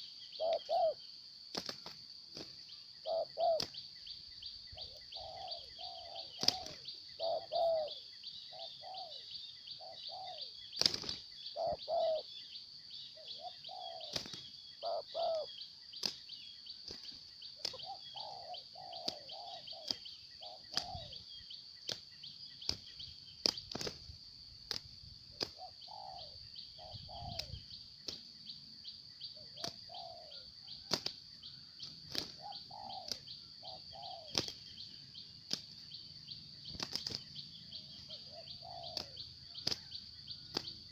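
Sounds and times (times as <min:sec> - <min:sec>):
doves cooing: 0:00.0 - 0:03.8, 0:04.8 - 0:12.3, 0:13.2 - 0:16.1, 0:16.8 - 0:21.4, 0:25.4 - 0:27.7, 0:29.4 - 0:35.7, 0:36.6 - 0:40.9.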